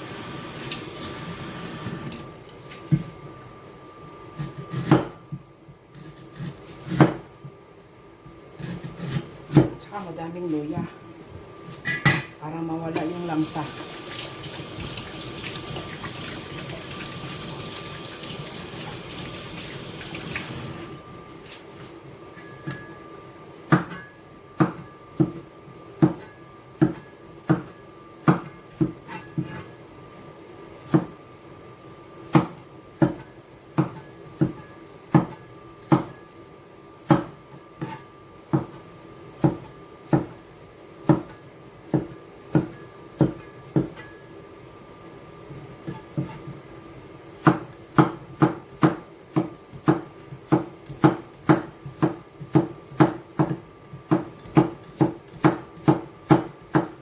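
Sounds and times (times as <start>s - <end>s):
knife chopping on wooden board: 4.4s - 5.2s, 6.0s - 7.3s, 8.6s - 9.8s, 33.8s - 36.2s, 37.1s - 38.8s, 39.4s - 40.4s, 41.0s - 44.1s, 45.8s - 46.6s, 47.4s - 57.0s
tap water running into sink: 13.4s - 20.9s.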